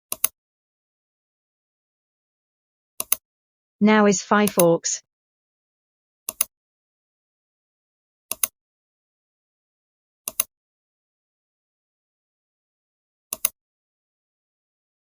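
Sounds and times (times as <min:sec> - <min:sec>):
computer mouse clicks: 0:00.1 - 0:00.4, 0:08.3 - 0:08.5, 0:10.3 - 0:10.5, 0:13.3 - 0:13.6.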